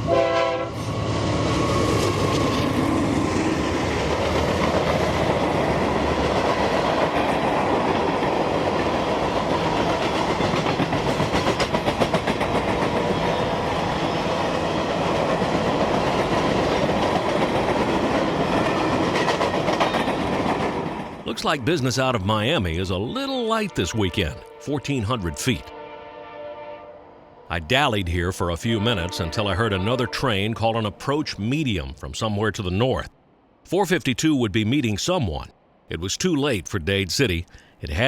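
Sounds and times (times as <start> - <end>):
freight train rumbling: 0.0 - 25.6
train wheels clickety-clack: 4.0 - 21.3.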